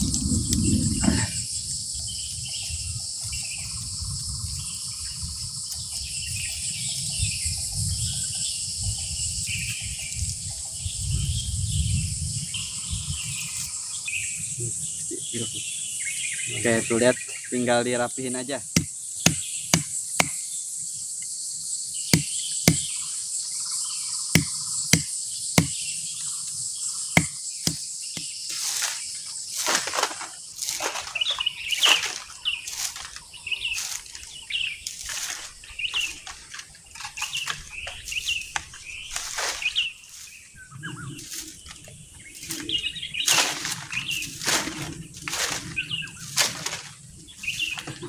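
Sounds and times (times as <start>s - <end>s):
crickets droning: 0.0s - 48.0s
sharp knocks: 18.8s - 20.4s, 22.2s - 22.9s, 24.4s - 25.8s, 27.2s - 28.3s
bird-like chirps: 30.5s - 48.0s.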